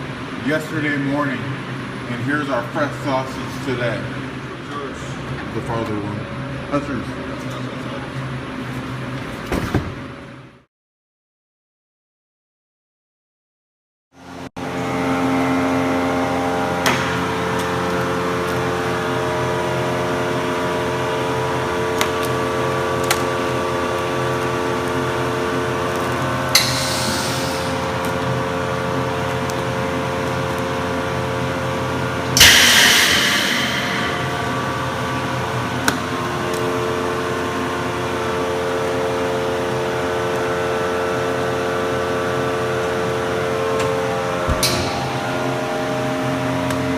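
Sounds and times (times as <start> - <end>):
machine hum with pitched tones: 14.2 - 46.9.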